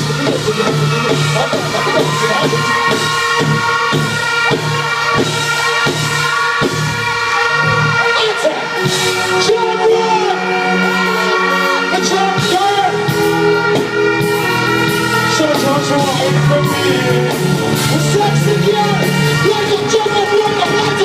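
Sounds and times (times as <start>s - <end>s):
keyboard chords and beat: 0.0s - 21.0s
person singing: 8.0s - 21.0s.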